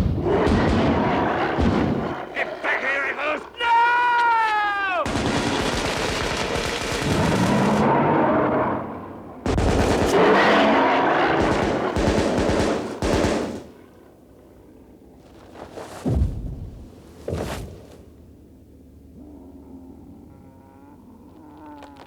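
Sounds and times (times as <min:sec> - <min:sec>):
rapid rifle fire: 0:00.0 - 0:02.3, 0:05.0 - 0:08.0, 0:09.4 - 0:13.9
heavy low thuds: 0:15.9 - 0:18.2.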